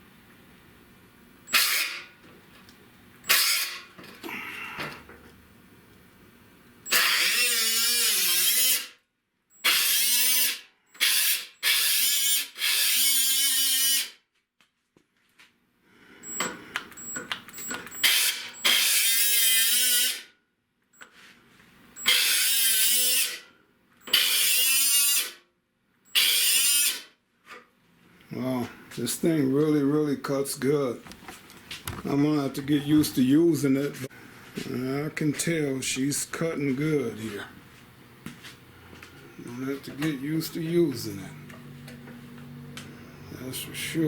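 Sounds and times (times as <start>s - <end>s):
power tool cutting sheet steel: 1.5s - 2.1s, 3.3s - 3.9s, 6.9s - 9.0s, 9.6s - 14.2s, 18.0s - 20.3s, 22.0s - 23.5s, 24.1s - 25.4s, 26.1s - 27.1s.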